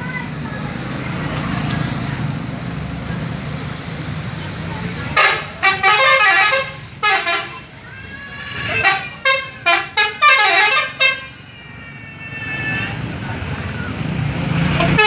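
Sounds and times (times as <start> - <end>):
bus musical horn toots: 5.1 - 7.8, 8.5 - 13.1, 14.6 - 15.0.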